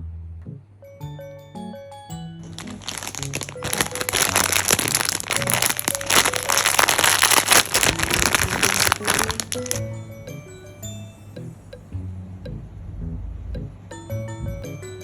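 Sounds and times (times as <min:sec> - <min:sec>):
soft music with chime-like notes: 0:00.8 - 0:06.0, 0:09.8 - 0:12.0, 0:13.9 - 0:15.0
packaging crinkling: 0:02.5 - 0:09.8.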